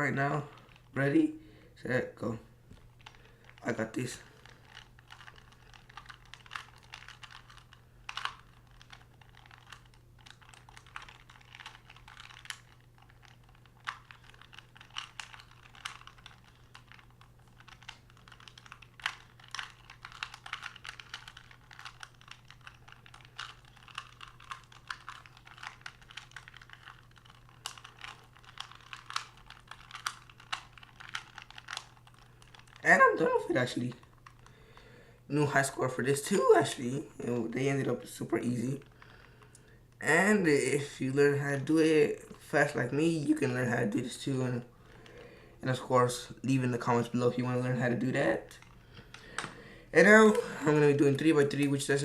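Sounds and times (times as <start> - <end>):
puzzle cube clicking: 2.9 - 34.5.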